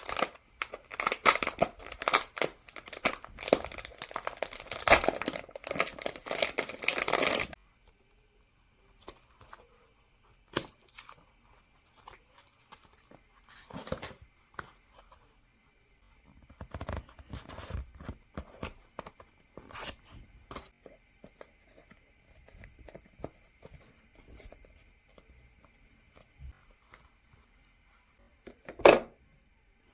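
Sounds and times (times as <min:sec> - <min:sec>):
plastic wrap rustling and crinkling: 0:00.0 - 0:07.6.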